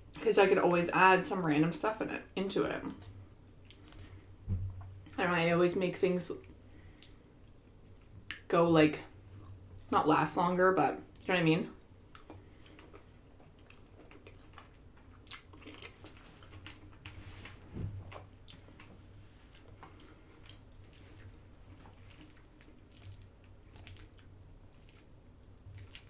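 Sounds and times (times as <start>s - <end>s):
low thump: 4.4s - 4.8s
person chewing: 12.0s - 26.0s.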